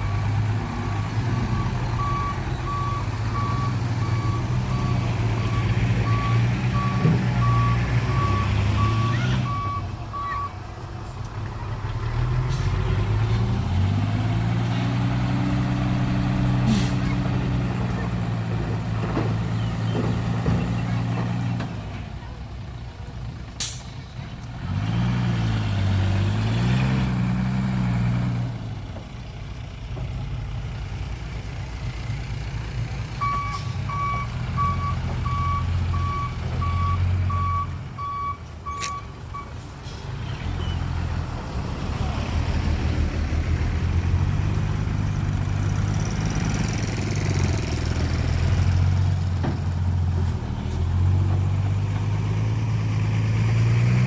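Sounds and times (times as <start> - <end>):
reversing beeper: 0.0 - 10.5, 33.2 - 39.5
diesel truck engine revving: 0.0 - 22.6, 23.2 - 29.0, 29.6 - 54.0.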